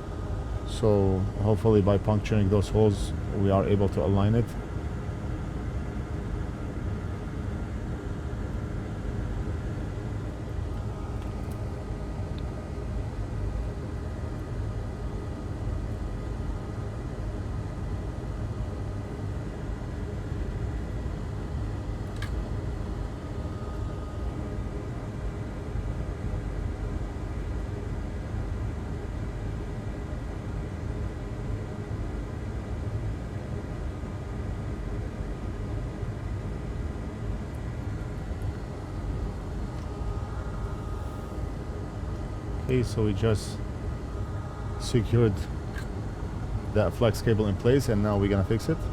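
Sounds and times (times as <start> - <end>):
steady low rumble: 0.0 - 19.2, 30.3 - 48.9
faint steady whine: 0.0 - 48.9
small click: 22.1 - 22.4.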